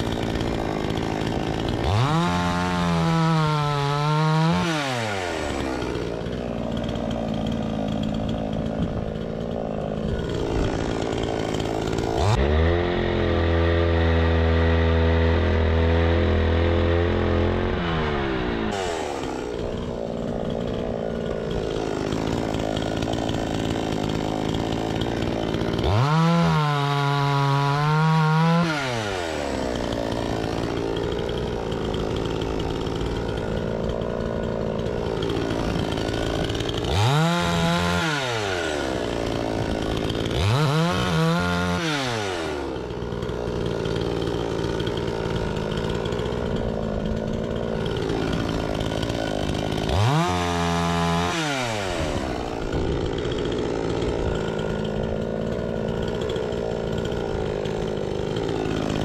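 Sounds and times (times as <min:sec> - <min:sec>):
chainsaw cutting logs: 0:00.0 - 0:59.0
chainsaw engine revving up: 0:00.0 - 0:59.0.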